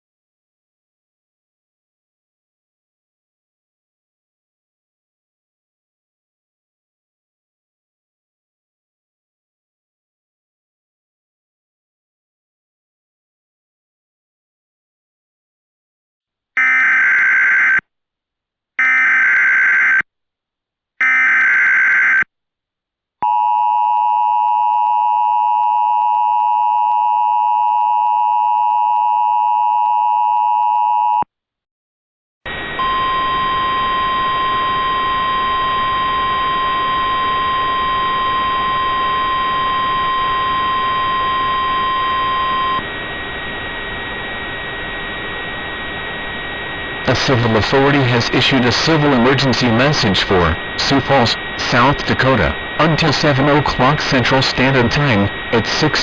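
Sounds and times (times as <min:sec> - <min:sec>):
steady high tone: 0:32.5 - 0:56.0
two-tone attention signal: 0:32.8 - 0:42.8
static hiss: 0:42.8 - 0:56.0
warbling data bursts: 0:47.1 - 0:56.0.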